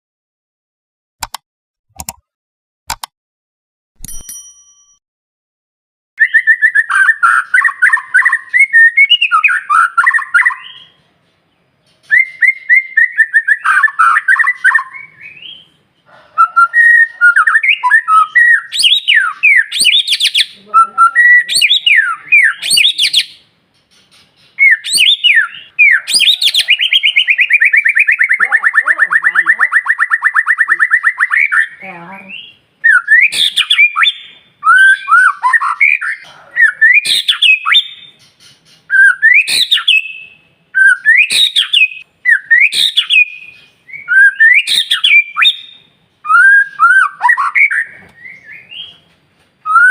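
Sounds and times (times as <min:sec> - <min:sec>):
bird singing whistles and trills: 0:06.2 - 0:11.0, 0:12.0 - 0:15.8, 0:16.4 - 0:23.4, 0:24.1 - 0:49.0, 0:49.6 - 0:49.9.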